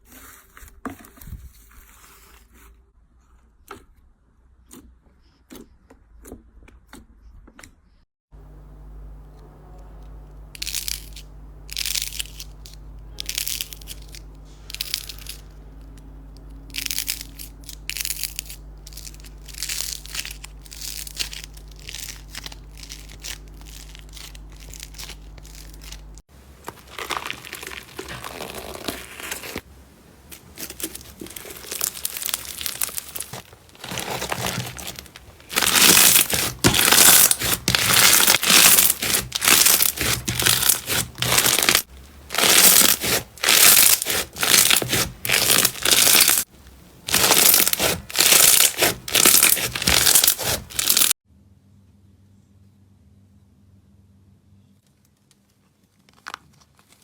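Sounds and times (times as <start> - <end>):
slime squishing and crackling: 10.5 - 29.7, 30.3 - 51.2.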